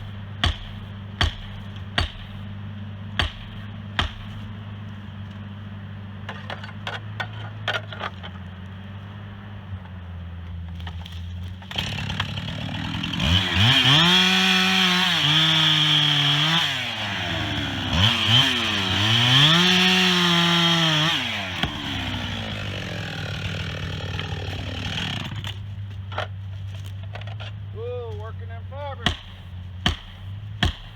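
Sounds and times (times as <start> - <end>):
chainsaw revving: 11.6 - 25.6.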